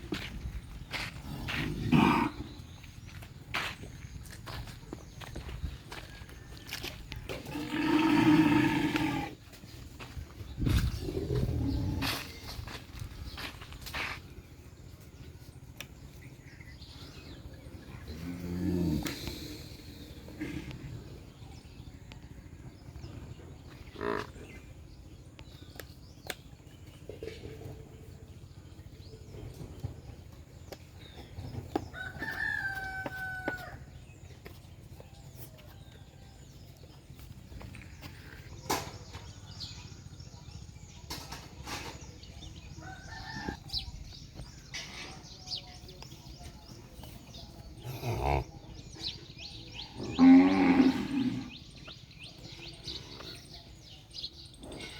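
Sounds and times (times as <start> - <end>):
birds chirping: 0.0 - 54.9
cow mooing: 7.4 - 9.4, 50.0 - 51.6
rooster crowing: 31.9 - 33.8.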